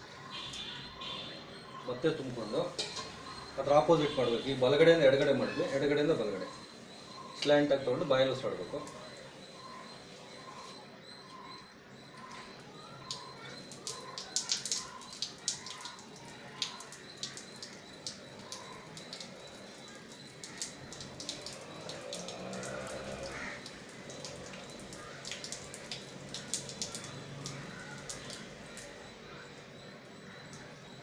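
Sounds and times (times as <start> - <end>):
water dripping into a basin: 0.0 - 31.0.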